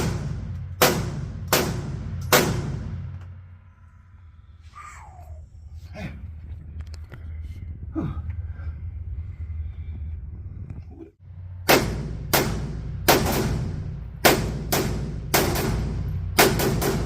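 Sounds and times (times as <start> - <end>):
gunshots: 0.0 - 3.1, 11.6 - 17.0.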